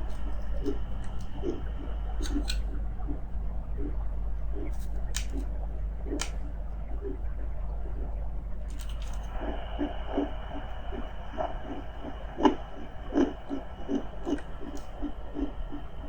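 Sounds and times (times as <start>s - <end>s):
heartbeat pulses: 0.0s - 8.7s, 9.3s - 16.0s
deep low rumble: 0.0s - 16.0s
sharp clicks: 6.1s - 6.4s.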